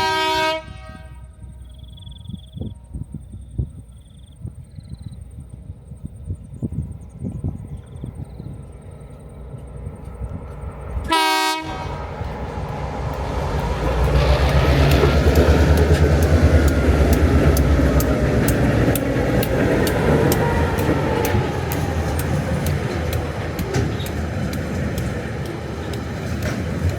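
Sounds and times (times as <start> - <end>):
locomotive horn toot: 0.0 - 1.7, 11.0 - 12.5, 13.8 - 16.9
locomotive engines passing: 0.0 - 26.9
wheels clicking over rail joints: 7.0 - 26.9.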